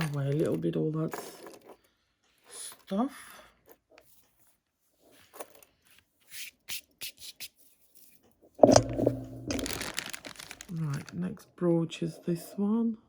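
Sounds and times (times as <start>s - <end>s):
items rustling on a table: 0.0s - 2.9s, 3.6s - 6.2s, 7.9s - 11.2s.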